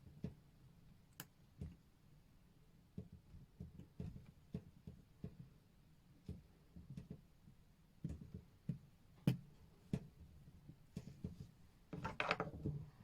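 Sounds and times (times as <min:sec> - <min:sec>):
small objects tapping and clicking: 0:12.0 - 0:12.6.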